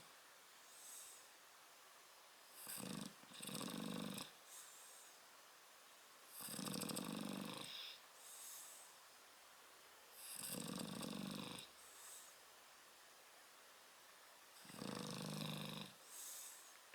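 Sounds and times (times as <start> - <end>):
dog snoring: 2.6 - 5.0, 6.3 - 8.6, 10.2 - 12.3, 14.6 - 16.5.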